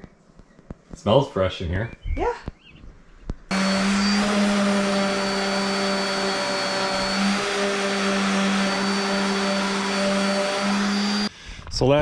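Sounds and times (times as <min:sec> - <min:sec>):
small electric machine humming: 0:03.5 - 0:11.3.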